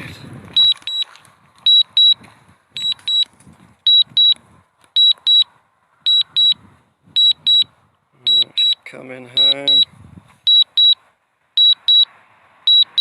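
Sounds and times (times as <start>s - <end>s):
high alarm beeps: 0.6s - 1.0s, 1.7s - 2.2s, 2.8s - 3.2s, 3.9s - 4.4s, 5.0s - 5.5s, 6.1s - 6.6s, 7.2s - 7.7s, 8.3s - 8.8s, 9.4s - 9.9s, 10.5s - 11.0s, 11.6s - 12.1s, 12.7s - 13.0s.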